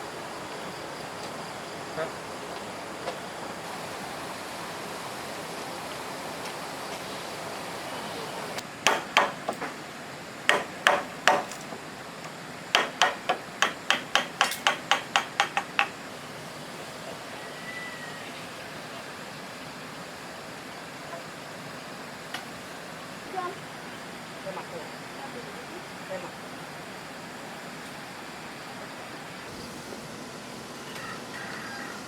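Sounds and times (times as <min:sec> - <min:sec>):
hammer blows on wood: 0:08.8 - 0:09.8, 0:10.5 - 0:11.6, 0:12.8 - 0:16.0.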